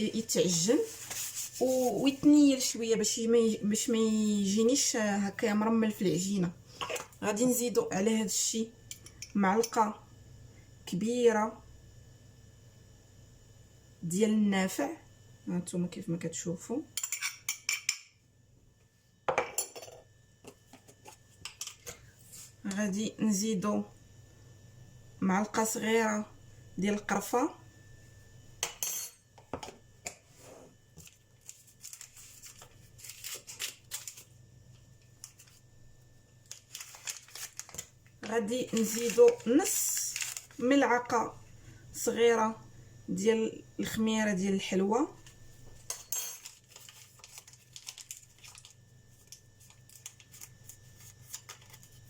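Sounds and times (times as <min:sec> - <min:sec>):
ingredient packets rustling: 0:31.0 - 0:34.4, 0:36.4 - 0:40.6, 0:46.4 - 0:52.0.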